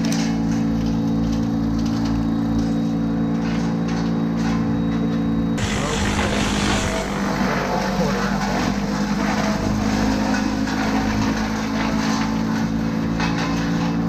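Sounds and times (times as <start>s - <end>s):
chainsaw running and cutting: 5.6s - 14.0s.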